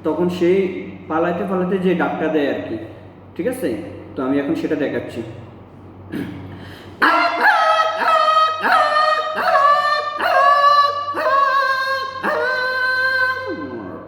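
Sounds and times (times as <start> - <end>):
man imitating puppy yelps: 7.0 - 14.0.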